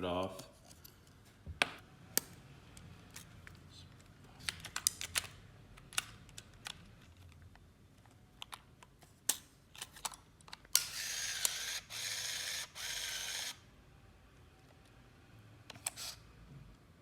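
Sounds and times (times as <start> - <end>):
camera motor whirring: 10.8 - 13.6, 15.8 - 16.2.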